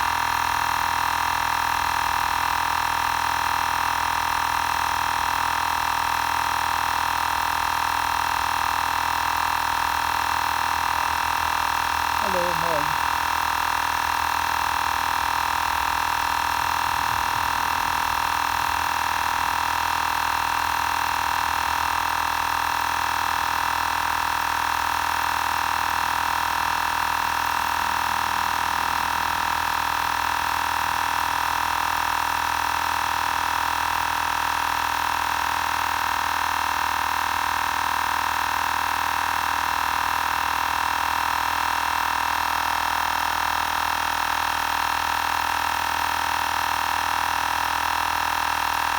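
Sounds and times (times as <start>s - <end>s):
air compressor high-pitched drone: 11.6s - 21.0s.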